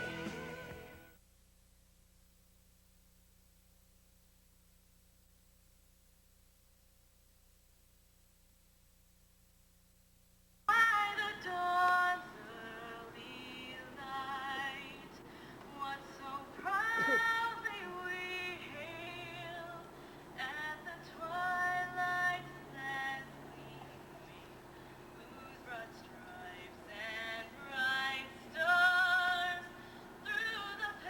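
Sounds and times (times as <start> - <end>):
woman singing with vibrato: 10.7 - 31.0.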